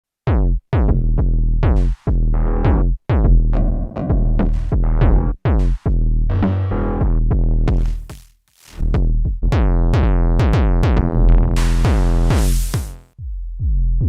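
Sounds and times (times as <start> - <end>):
deep bass tone: 0.3 - 8.0, 8.8 - 14.0
synthesizer drum hits: 10.4 - 13.2.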